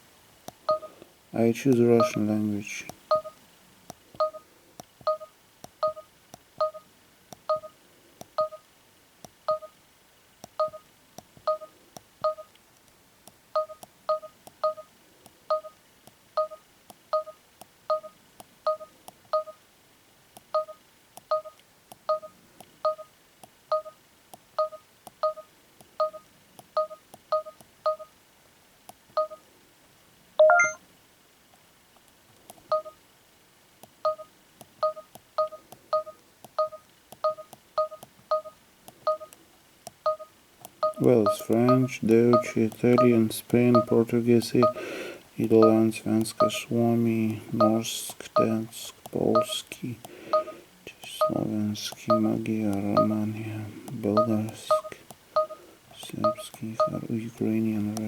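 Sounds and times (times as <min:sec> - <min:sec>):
button clicks: 0:30.4 - 0:30.8
longer confirm beep: 0:30.4 - 0:30.8, 0:40.1 - 0:44.0, 0:44.6 - 0:44.8, 0:46.4 - 0:46.6, 0:56.2 - 0:57.0
short button beeps: 0:30.4 - 0:30.8.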